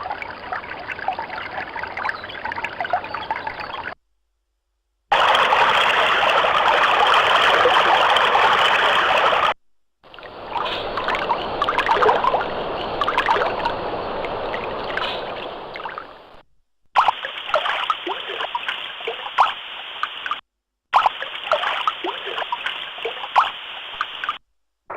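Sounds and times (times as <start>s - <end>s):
rush of flowing water: 0.0s - 4.0s, 5.1s - 16.4s, 17.0s - 20.4s, 21.0s - 24.4s
babbling trickling water: 17.2s - 19.6s.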